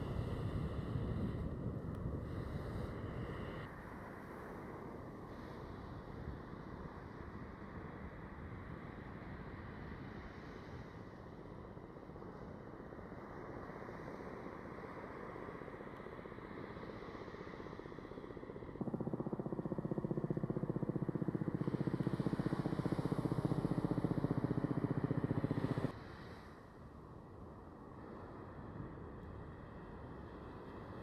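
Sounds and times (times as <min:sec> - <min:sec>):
wind: 0:00.0 - 0:31.0
motor running with fast pulse: 0:18.8 - 0:26.0.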